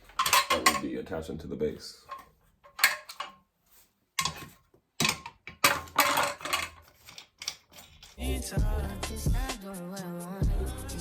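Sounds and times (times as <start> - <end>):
chair hardware clicking and rattling: 0.0 - 0.9, 2.1 - 3.4, 4.2 - 8.2
metal clatter: 0.0 - 1.0, 2.0 - 3.4, 4.2 - 8.2.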